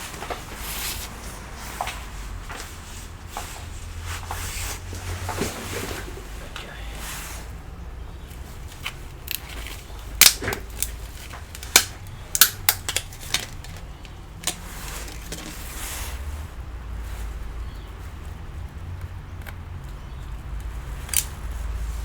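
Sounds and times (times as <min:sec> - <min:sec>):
small laptop parts clicking: 0:08.7 - 0:15.5, 0:20.6 - 0:21.5.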